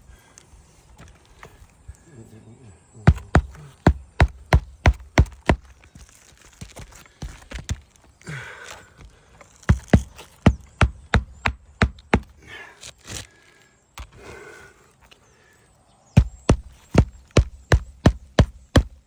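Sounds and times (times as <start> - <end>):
hammer striking roofing nails: 3.1 - 5.8, 9.7 - 12.4, 16.2 - 19.0
shingle rustling: 3.1 - 13.6, 16.2 - 19.0.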